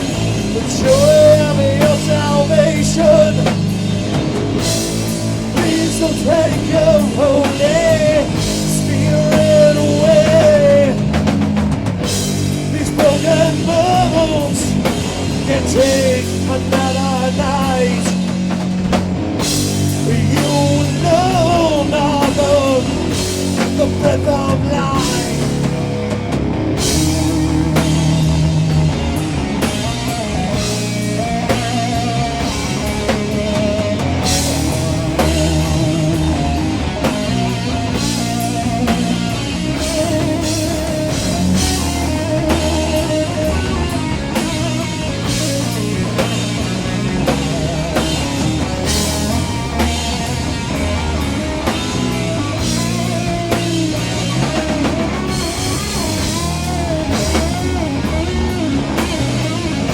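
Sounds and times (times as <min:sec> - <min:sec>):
heavy metal band playing: 0:00.0 - 0:59.9
lead guitar wavering notes: 0:24.8 - 0:59.9.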